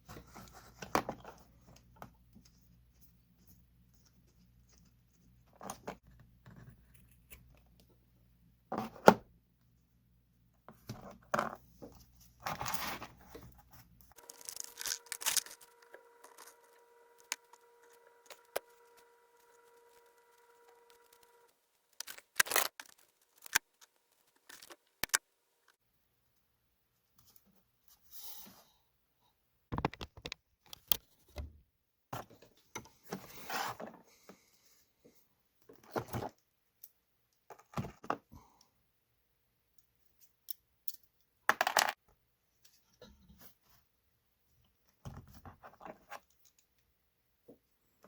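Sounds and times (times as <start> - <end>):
small hard objects clinking: 14.2 - 15.7.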